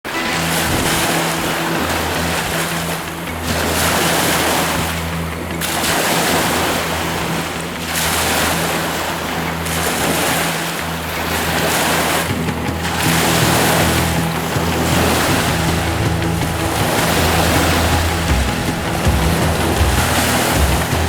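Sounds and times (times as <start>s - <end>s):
lake waves washing onto shore: 0.1s - 21.0s
steady low hum: 12.3s - 21.0s.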